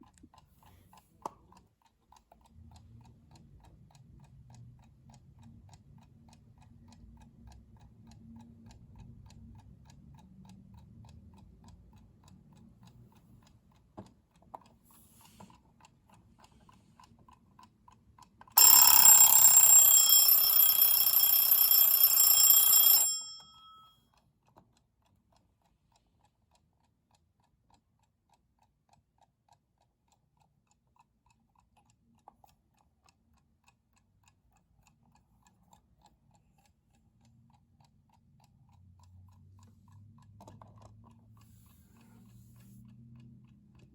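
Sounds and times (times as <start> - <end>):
alarm bell ringing: 18.6 - 23.9
alarm clock ticking: 18.6 - 23.9.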